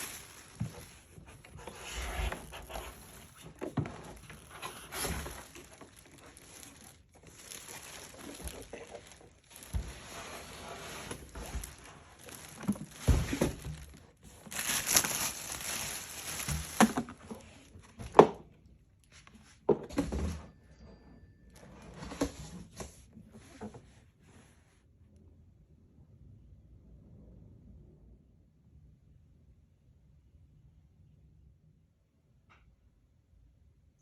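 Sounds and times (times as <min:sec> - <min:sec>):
plastic and cardboard rustling: 0:00.0 - 0:20.4.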